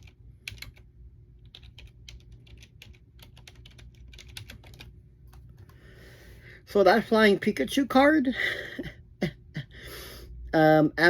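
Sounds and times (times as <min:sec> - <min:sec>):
typing on computer keyboard: 0:00.0 - 0:00.8, 0:01.4 - 0:05.8.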